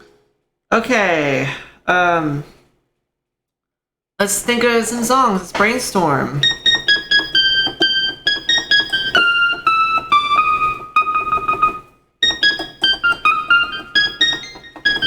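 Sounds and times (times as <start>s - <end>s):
electronic keyboard melody: 0.0s - 0.3s, 6.4s - 15.0s.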